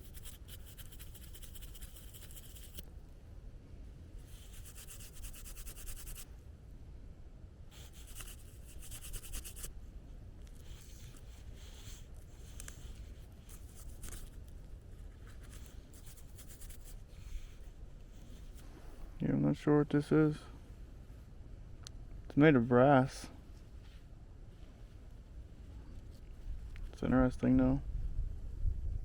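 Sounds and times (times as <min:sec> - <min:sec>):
fingers rubbing dirt off metal: 0:00.0 - 0:02.8, 0:07.8 - 0:09.7
light scrapes and clicks: 0:10.4 - 0:19.0.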